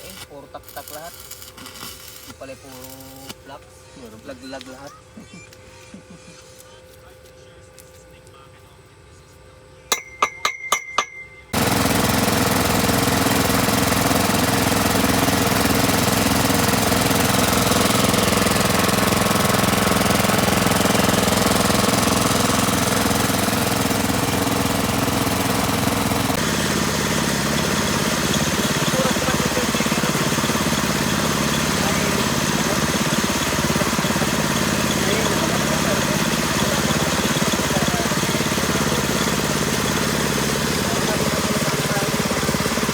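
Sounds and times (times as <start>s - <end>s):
drilling rig engine knocking: 9.9s - 42.9s.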